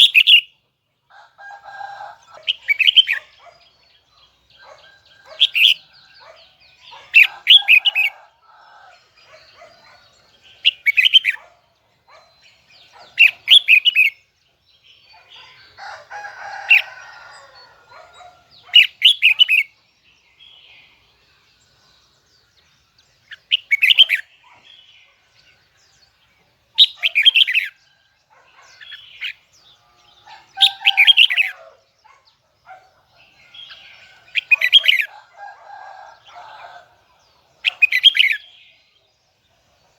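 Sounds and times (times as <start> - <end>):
bird singing rapid phrases: 0.0 - 39.9.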